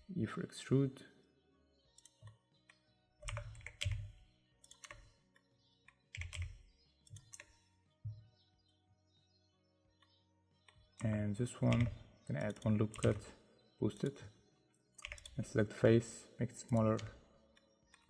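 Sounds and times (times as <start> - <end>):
keyboard keys tapping: 2.0 - 5.2, 5.8 - 8.2, 10.7 - 13.3, 14.9 - 15.7.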